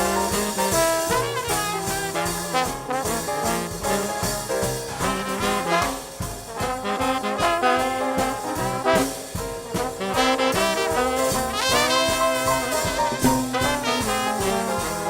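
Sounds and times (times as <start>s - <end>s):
dixieland jazz band playing: 0.0s - 15.0s.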